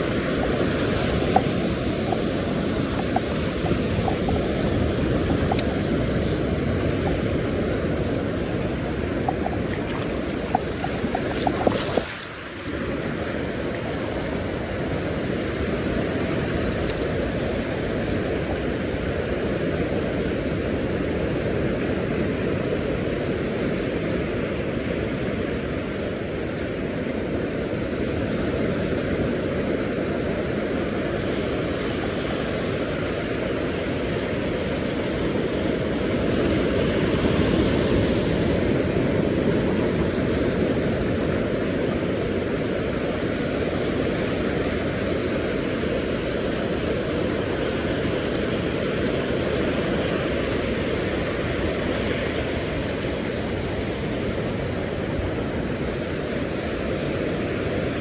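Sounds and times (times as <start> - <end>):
surf: 0.0 - 16.5
wind: 0.0 - 58.0.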